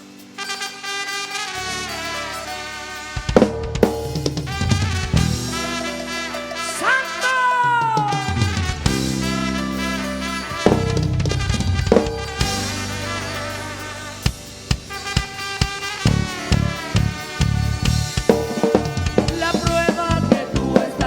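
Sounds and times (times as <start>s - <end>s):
bass guitar notes: 3.5s - 6.7s, 8.0s - 15.2s, 16.0s - 21.0s
drum hits: 7.8s - 21.0s.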